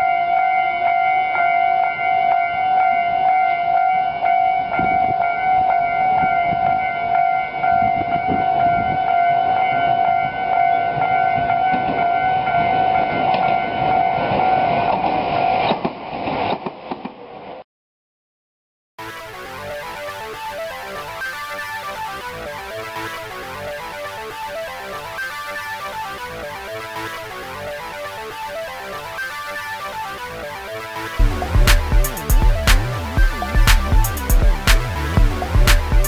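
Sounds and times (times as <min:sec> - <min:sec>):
level crossing warning bell: 0:00.0 - 0:15.0, 0:19.8 - 0:36.0
train rumbling: 0:07.5 - 0:17.6.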